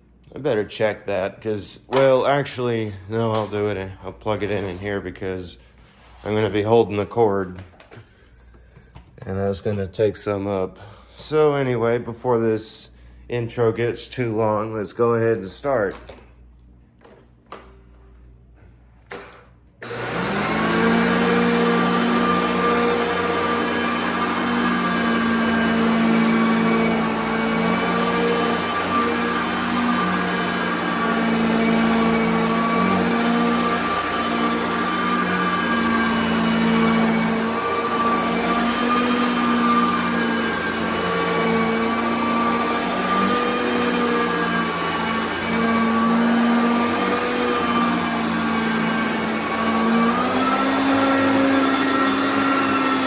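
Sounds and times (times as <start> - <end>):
vacuum cleaner motor whining: 19.1 - 53.0.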